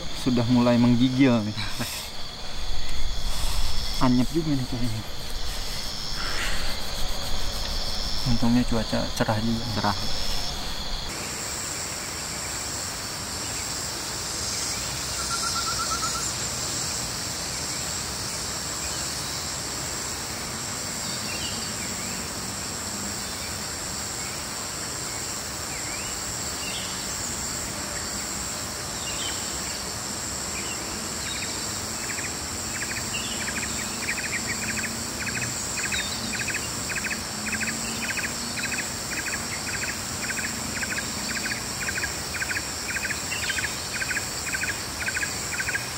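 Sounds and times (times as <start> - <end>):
regular pulsing call: 0.0 - 11.1
insects trilling: 0.0 - 45.9.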